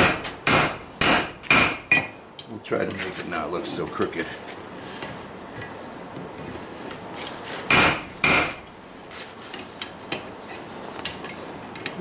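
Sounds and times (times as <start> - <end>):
hammer blows on anvil: 0.0 - 2.2.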